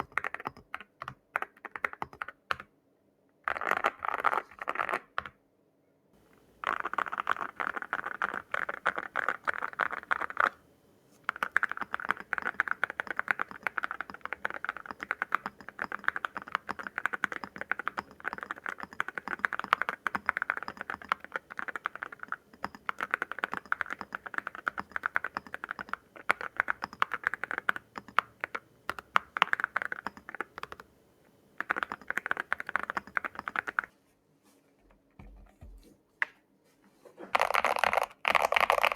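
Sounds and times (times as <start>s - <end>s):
mechanical keyboard typing: 0.0s - 2.7s, 6.6s - 10.6s, 11.3s - 30.9s, 31.6s - 33.9s, 37.4s - 38.9s.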